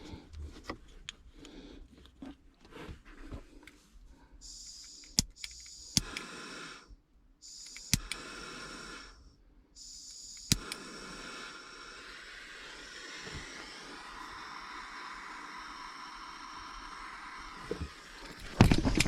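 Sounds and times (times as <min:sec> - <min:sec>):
soldering torch hissing: 0:04.4 - 0:06.8, 0:07.4 - 0:09.2, 0:09.8 - 0:18.7
sharp clicks: 0:04.5 - 0:06.4, 0:07.5 - 0:08.4, 0:09.8 - 0:11.0.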